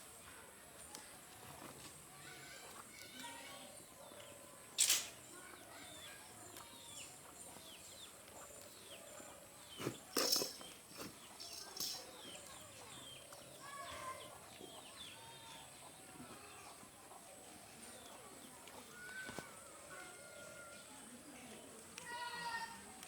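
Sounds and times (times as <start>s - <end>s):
small birds chirping: 0.1s - 23.0s.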